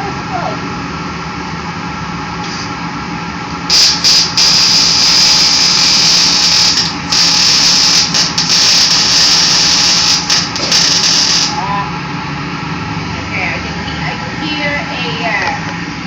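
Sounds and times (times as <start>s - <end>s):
steady hum: 0.0s - 16.0s
welding arc sizzling: 3.7s - 11.8s.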